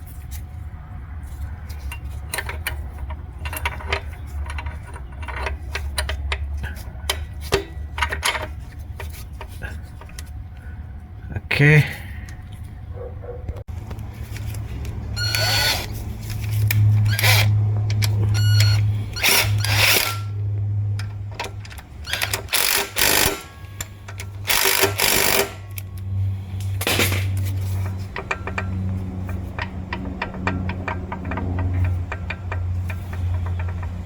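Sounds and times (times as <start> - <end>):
steady low hum: 0.0 - 34.0
hand tools clanking on metal: 1.7 - 10.3, 17.0 - 26.0, 26.6 - 34.0.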